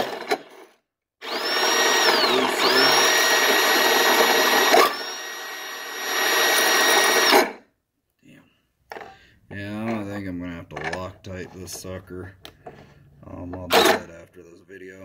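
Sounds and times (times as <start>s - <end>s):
grinding wheel motor whining: 0.0s - 7.6s.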